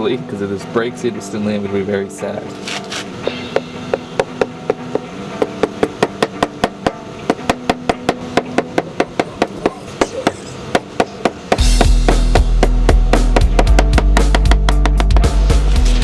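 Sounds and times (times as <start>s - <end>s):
hammer tapping lightly: 3.5s - 12.0s.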